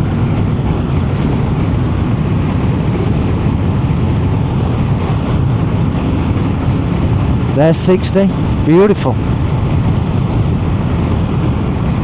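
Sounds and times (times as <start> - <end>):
wind rushing over microphone: 0.0 - 12.0.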